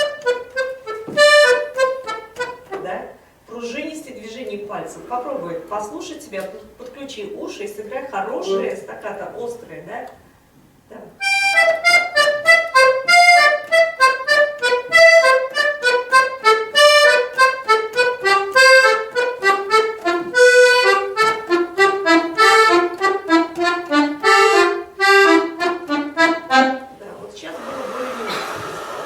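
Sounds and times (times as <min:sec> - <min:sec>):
accordion staccato notes: 0:00.0 - 0:03.0, 0:03.7 - 0:06.5, 0:11.2 - 0:27.0.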